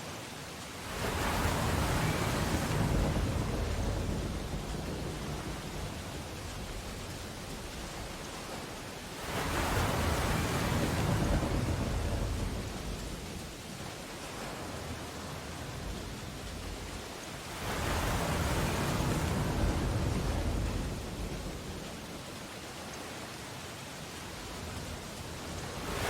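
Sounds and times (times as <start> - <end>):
steady rain: 0.0 - 26.0
thunder rumbling: 0.9 - 17.1, 17.8 - 22.2.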